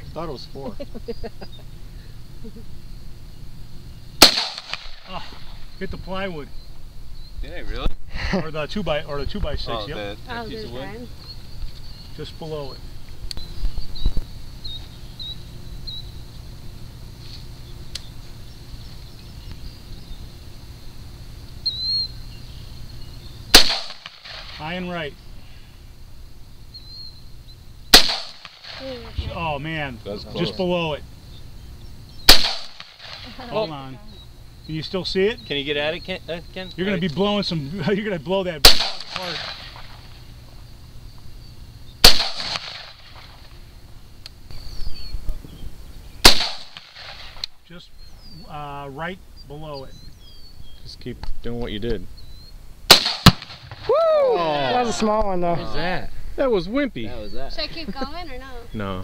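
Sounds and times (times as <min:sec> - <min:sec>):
bird chirp: 0:00.0 - 0:04.2, 0:05.1 - 0:23.6, 0:26.4 - 0:28.0, 0:28.8 - 0:32.4, 0:33.2 - 0:38.5, 0:39.2 - 0:42.1, 0:44.5 - 0:46.3, 0:47.6 - 0:52.7, 0:56.5 - 0:59.0
low outdoor rumble: 0:00.0 - 0:59.0
rifle shot with echo: 0:04.2 - 0:05.1, 0:23.5 - 0:24.7, 0:27.9 - 0:29.4, 0:32.3 - 0:33.4, 0:38.6 - 0:40.0, 0:42.0 - 0:43.5, 0:46.2 - 0:47.5, 0:52.9 - 0:53.8.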